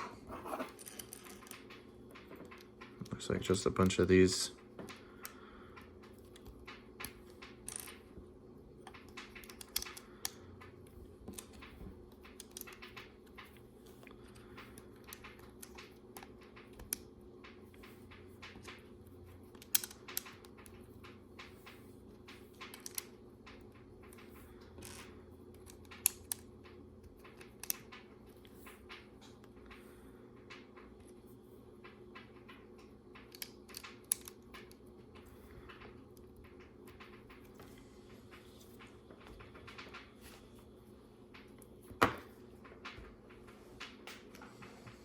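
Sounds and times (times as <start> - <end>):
faint steady hum: 0.0 - 45.0
plastic pieces clicking: 0.5 - 8.2, 8.8 - 29.8, 31.8 - 37.8.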